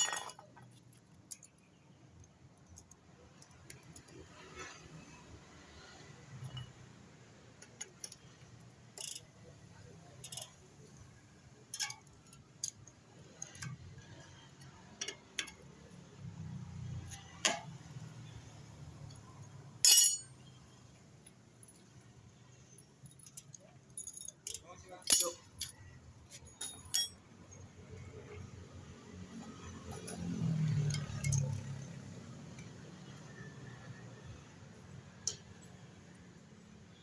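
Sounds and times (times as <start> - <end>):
metal tools clinking: 0.0 - 0.6, 19.8 - 20.5, 23.1 - 27.2.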